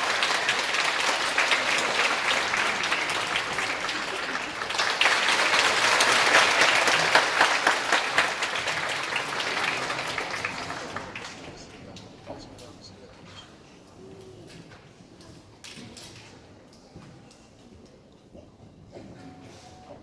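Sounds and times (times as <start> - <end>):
audience applauding: 0.0 - 12.4.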